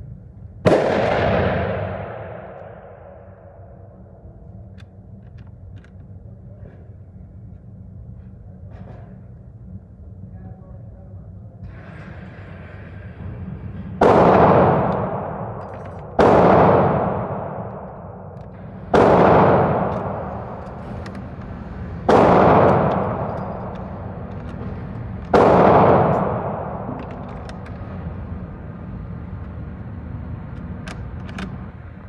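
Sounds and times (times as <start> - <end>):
gunshots ringing out: 0.7 - 3.8, 13.6 - 28.2.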